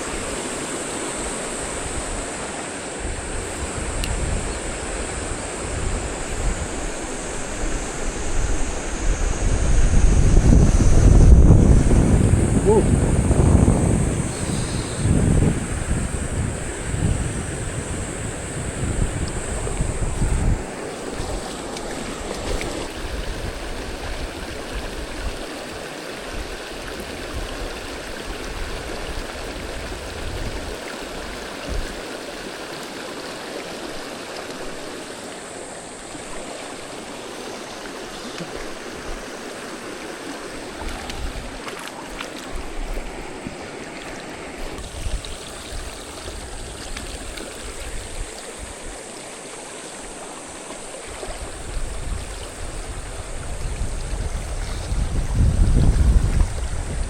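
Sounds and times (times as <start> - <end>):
stream water rushing: 0.0 - 57.0
wind buffeting microphone: 1.2 - 25.5, 26.3 - 32.0, 40.4 - 41.7, 44.4 - 49.2, 50.0 - 57.0.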